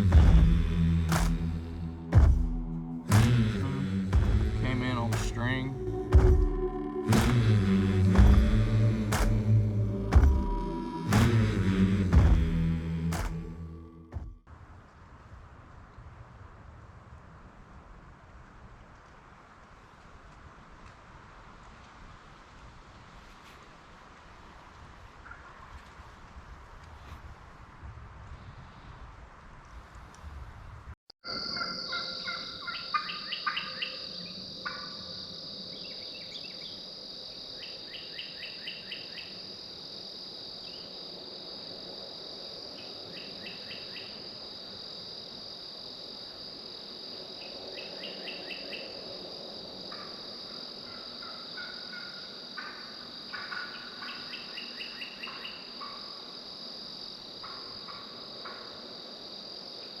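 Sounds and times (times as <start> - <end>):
crickets chirping: 31.2 - 60.0.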